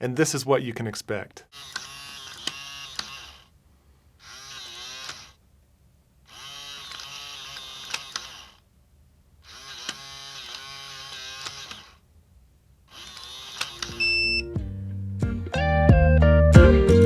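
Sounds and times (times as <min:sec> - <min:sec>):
small motor whine: 0:01.6 - 0:03.5, 0:04.2 - 0:05.4, 0:06.3 - 0:08.6, 0:09.4 - 0:12.0, 0:12.9 - 0:14.5.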